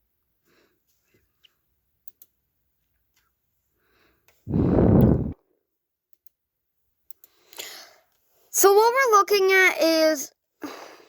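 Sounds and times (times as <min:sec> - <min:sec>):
person exhaling loudly: 0:04.5 - 0:05.4.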